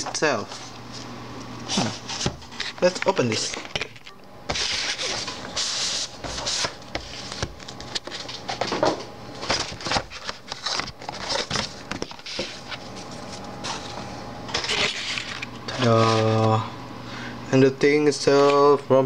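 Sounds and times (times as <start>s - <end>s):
packaging rustling: 9.4s - 16.4s.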